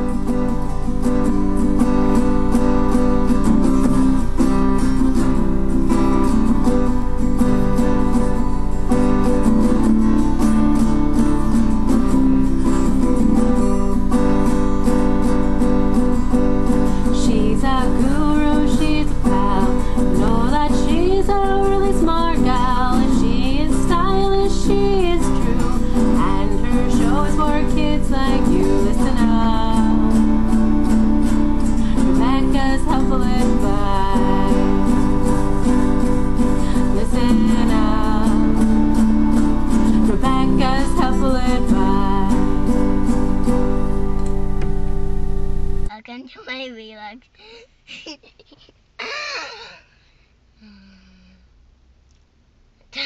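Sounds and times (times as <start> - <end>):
strummed acoustic guitar: 0.0 - 46.8
person singing: 17.1 - 30.5, 31.8 - 35.6, 36.4 - 38.8, 39.8 - 42.7.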